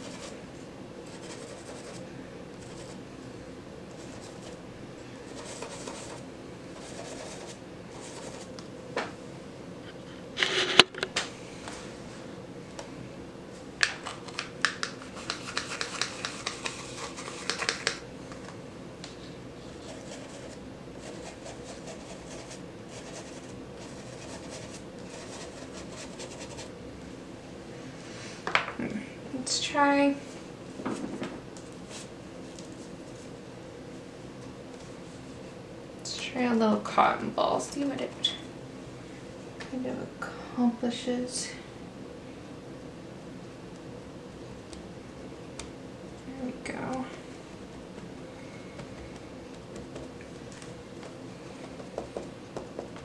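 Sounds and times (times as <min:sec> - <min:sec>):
faint steady hum: 0:00.0 - 0:53.0
scratchy ticks of toothbrush bristles: 0:14.8 - 0:18.0.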